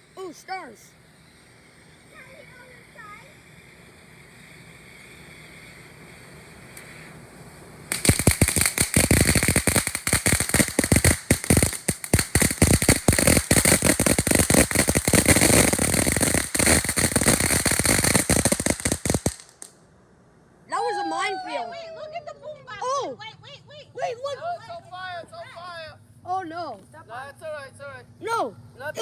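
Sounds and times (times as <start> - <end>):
firework crackling: 0.0 - 19.8
faint fuse hiss: 0.0 - 20.6.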